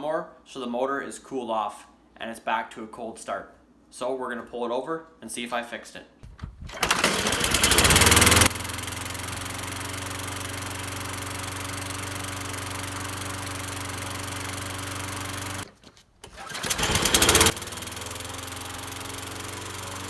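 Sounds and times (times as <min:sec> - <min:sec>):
lawnmower engine running: 0:06.2 - 0:20.0.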